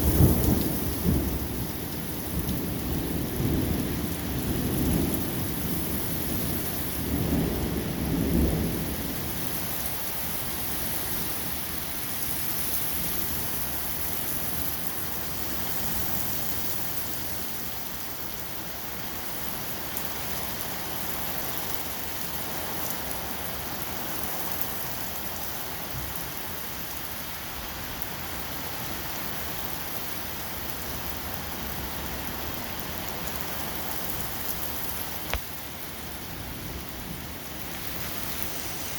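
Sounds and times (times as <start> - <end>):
low rumble of thunder: 0.0 - 10.8
steady rain: 0.0 - 38.9.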